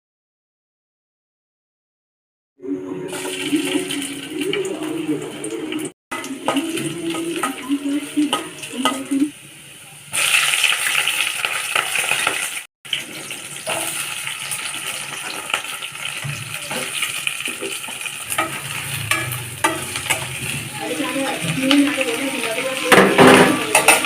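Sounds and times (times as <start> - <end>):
food sizzling in hot oil: 3.1 - 24.0.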